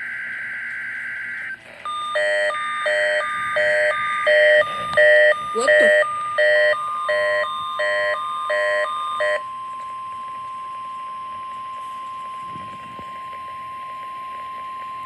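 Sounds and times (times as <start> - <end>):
steady alarm tone: 0.0 - 15.0
electronic alert beeps: 1.9 - 9.4.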